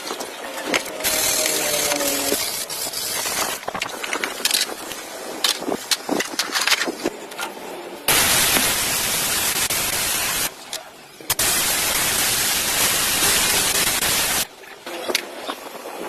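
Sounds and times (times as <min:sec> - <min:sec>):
loud steady hiss: 0:08.1 - 0:14.6.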